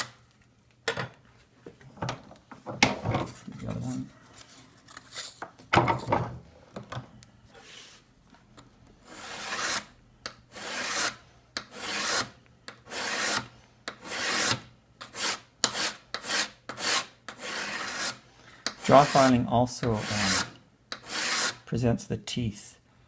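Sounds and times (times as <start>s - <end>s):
file rasping on steel: 9.1s - 9.9s, 10.5s - 12.3s, 12.9s - 21.7s.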